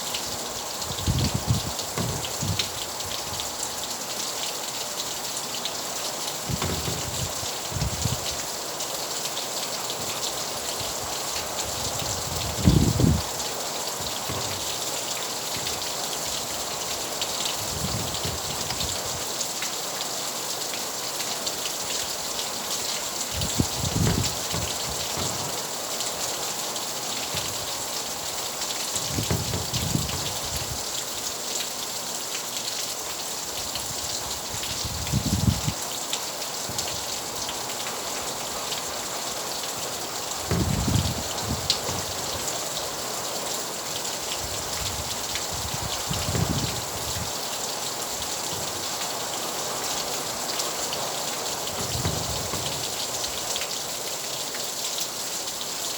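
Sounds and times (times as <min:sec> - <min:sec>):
rain falling: 0:00.0 - 0:55.9
low thumps: 0:01.0 - 0:02.8, 0:06.5 - 0:08.3, 0:12.2 - 0:13.4, 0:14.0 - 0:14.9, 0:23.4 - 0:25.7, 0:27.3 - 0:27.8, 0:29.0 - 0:30.8, 0:40.5 - 0:42.5, 0:46.1 - 0:47.3, 0:51.7 - 0:53.5.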